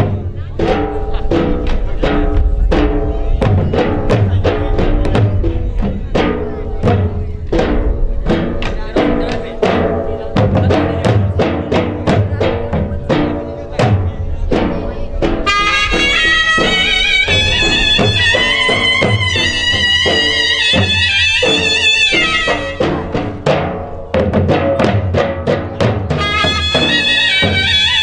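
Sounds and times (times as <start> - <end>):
quick drum beat: 0.0 - 28.0
wavering wind instrument melody: 14.5 - 23.8, 26.0 - 28.0.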